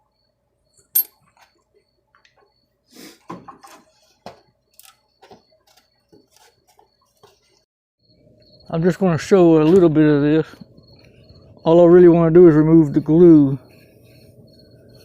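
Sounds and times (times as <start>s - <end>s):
tools and metal parts clicking: 0.8s - 1.2s.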